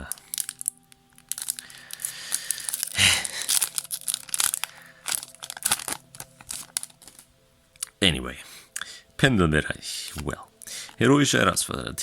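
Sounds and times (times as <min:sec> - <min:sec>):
trading cards being handled: 0:00.0 - 0:07.3
foil wrapper crinkling: 0:00.0 - 0:07.9.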